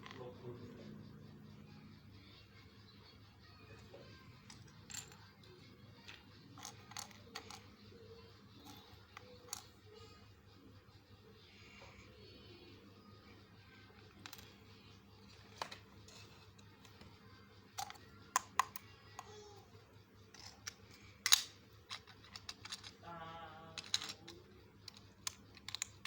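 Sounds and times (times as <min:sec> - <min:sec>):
plastic toy pieces clicking: 0:06.0 - 0:07.7, 0:08.6 - 0:09.7, 0:14.0 - 0:14.6, 0:17.8 - 0:19.5, 0:20.3 - 0:23.0, 0:23.8 - 0:26.0.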